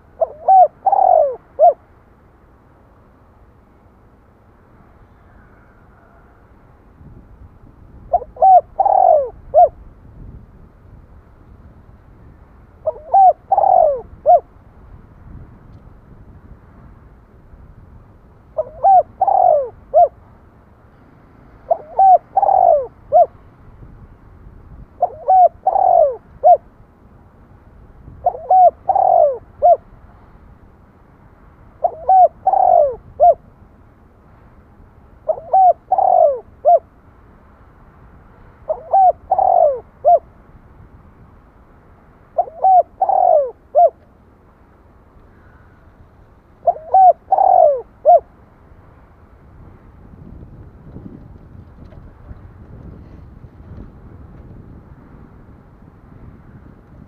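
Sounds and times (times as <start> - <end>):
dove cooing: 0.0 - 1.8, 8.1 - 9.8, 12.8 - 14.5, 18.6 - 20.2, 21.7 - 23.4, 25.0 - 26.6, 28.2 - 29.9, 31.8 - 33.4, 35.2 - 36.9, 38.6 - 40.3, 42.4 - 44.0, 46.6 - 48.3.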